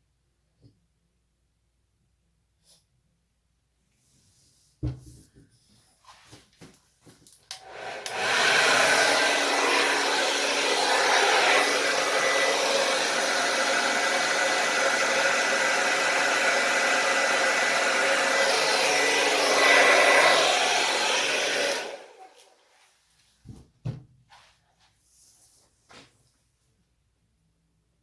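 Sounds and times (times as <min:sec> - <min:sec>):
hair dryer running: 0:07.5 - 0:22.5.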